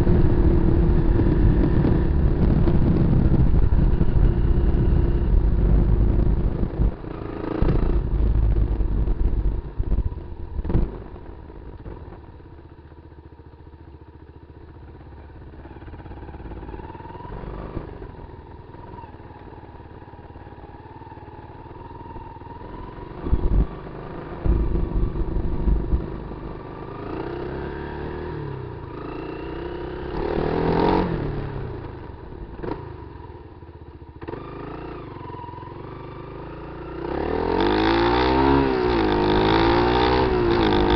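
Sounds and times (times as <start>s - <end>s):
loud low rumbles: 0.0s - 11.7s, 23.1s - 27.0s
motorcycle engine revving: 0.0s - 40.9s.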